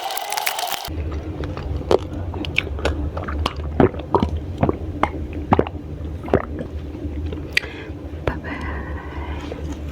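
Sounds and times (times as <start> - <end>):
chewing crisp raw vegetables: 0.0 - 6.7
steady low hum: 0.8 - 9.9.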